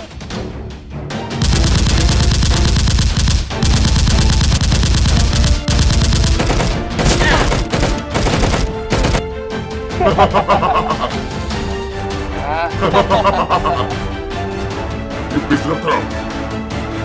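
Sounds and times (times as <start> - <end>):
rapid automatic gunfire: 1.4 - 9.2.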